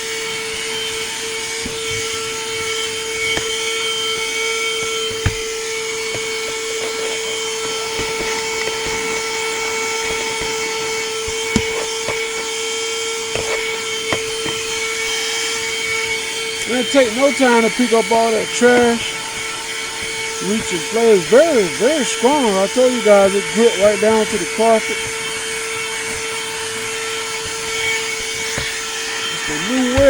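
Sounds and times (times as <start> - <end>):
car vacuum whining: 0.0 - 30.0
sharp knocks: 4.9 - 9.3.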